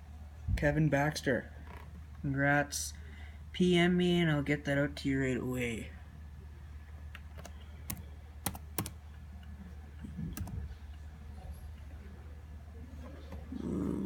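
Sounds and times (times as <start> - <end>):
steady low hum: 0.0 - 14.0
keyboard keys clicking: 7.4 - 9.0, 10.3 - 10.6.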